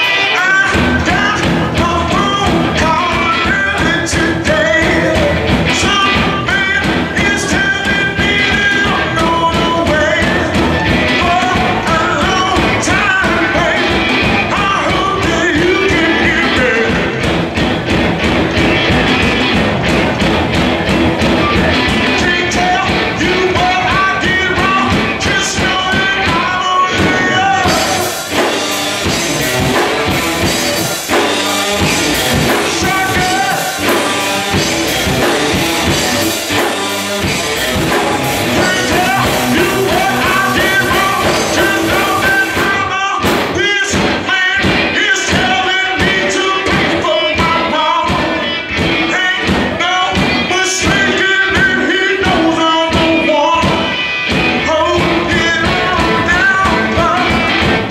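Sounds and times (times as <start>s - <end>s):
person singing: 0.0s - 17.3s, 21.2s - 57.9s
live rock band: 0.0s - 57.9s.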